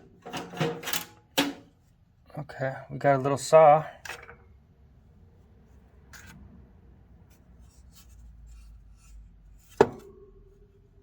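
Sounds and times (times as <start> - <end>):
tools handling noise: 0.0 - 1.8.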